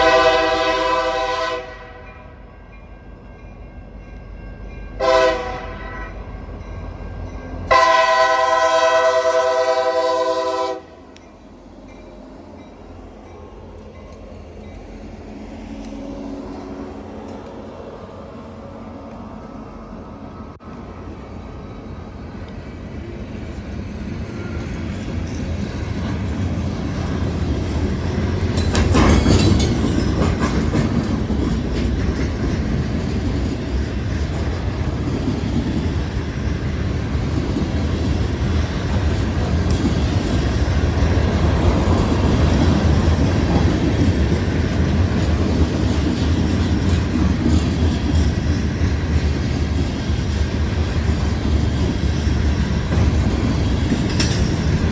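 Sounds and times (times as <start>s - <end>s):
diesel locomotives passing: 0.0s - 54.9s.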